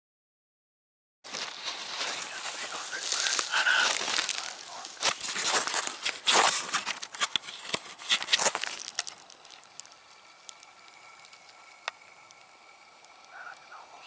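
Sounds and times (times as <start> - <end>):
footsteps through dry leaves: 1.3 - 9.7.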